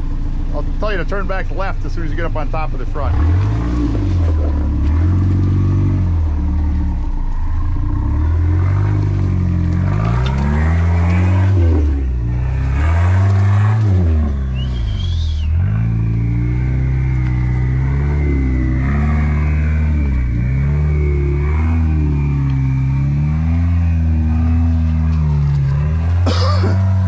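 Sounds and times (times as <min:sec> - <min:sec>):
engine revving: 0:00.0 - 0:27.0
high-pitched squeal: 0:10.0 - 0:26.0.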